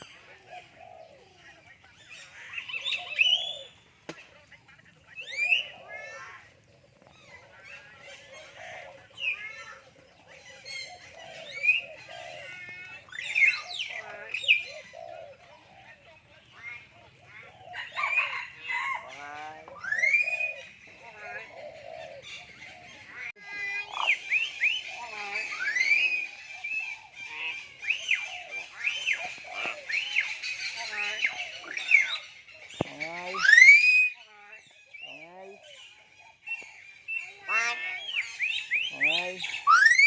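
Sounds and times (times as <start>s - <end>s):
myna whistling and chattering: 0.0s - 19.0s, 19.7s - 40.0s
myna bird whistling: 2.1s - 3.8s, 5.1s - 6.2s, 23.8s - 35.2s, 38.0s - 40.0s.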